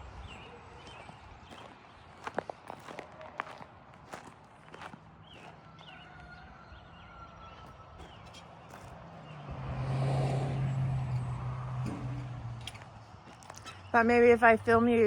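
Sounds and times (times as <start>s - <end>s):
engine humming: 8.0s - 15.0s.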